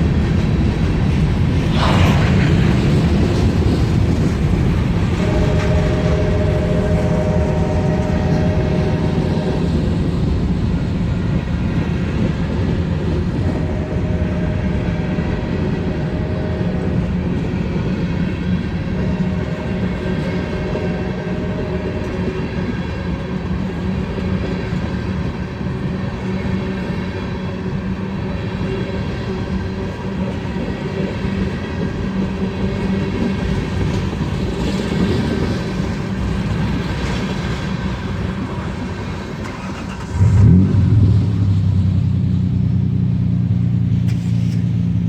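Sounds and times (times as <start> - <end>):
train wheels on rails: 0.0 - 45.0
steady higher tones: 4.3 - 24.4.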